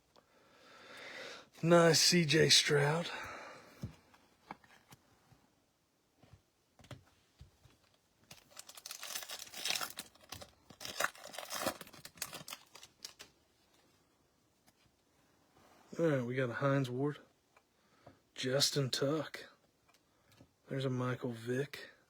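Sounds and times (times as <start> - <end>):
wrapper tearing and crinkling: 8.3 - 13.3.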